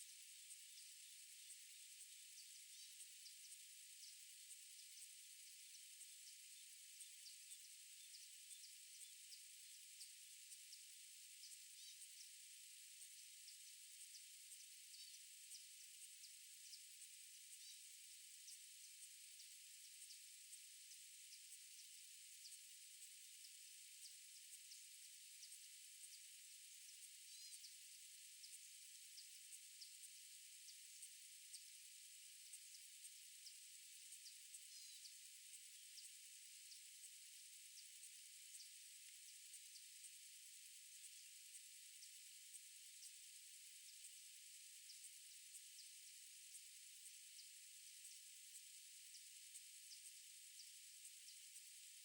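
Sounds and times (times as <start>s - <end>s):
outdoor ambience hiss: 0.0s - 52.0s
faint high chirps: 27.2s - 27.8s, 34.2s - 35.2s.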